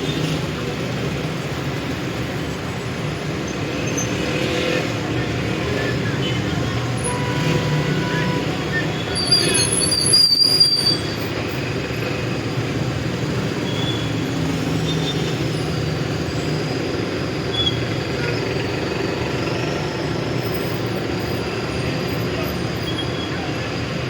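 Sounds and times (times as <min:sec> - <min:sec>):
traffic rumble: 0:00.0 - 0:24.0.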